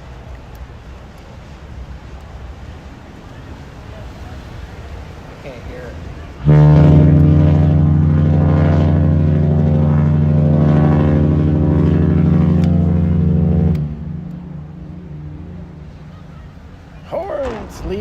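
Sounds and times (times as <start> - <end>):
deep ship horn blast: 6.4 - 16.8.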